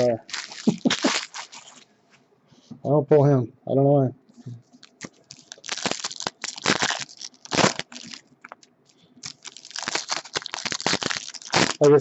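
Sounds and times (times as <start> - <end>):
wrappers crinkling and tearing: 0.0 - 1.8, 4.8 - 12.0.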